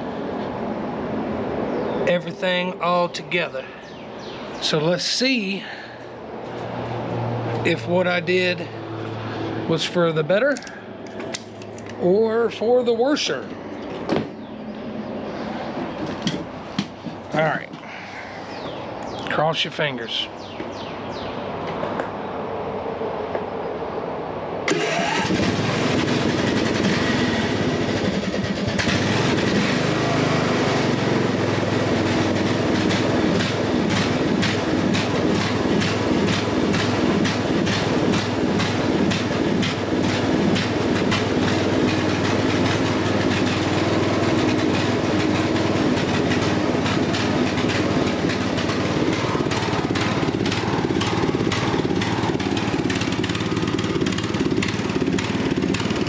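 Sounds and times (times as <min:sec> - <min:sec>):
mower engine cranking: 0:24.7 - 0:56.0
mower engine running: 0:24.7 - 0:56.0.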